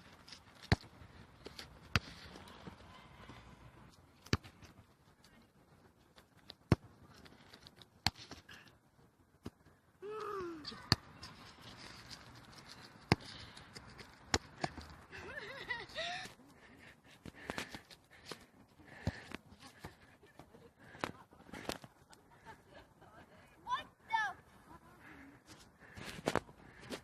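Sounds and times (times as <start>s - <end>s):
football kicked and bouncing: 0.6s - 0.9s, 1.5s - 2.2s, 14.3s - 14.9s.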